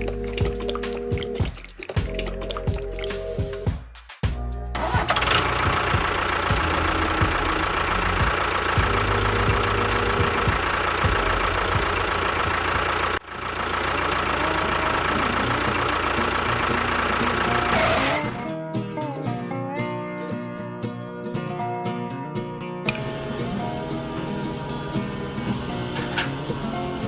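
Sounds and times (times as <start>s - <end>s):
motor running with whine: 5.0s - 18.4s.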